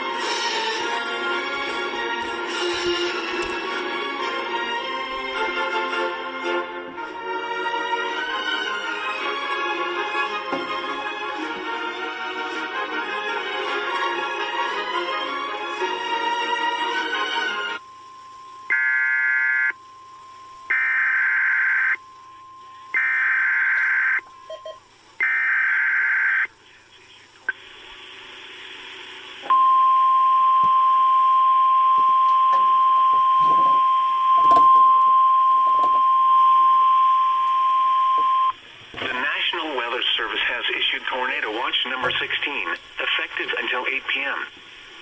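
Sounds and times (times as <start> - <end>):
steady warning alarm tone: 17.5 - 26.6, 29.5 - 45.0.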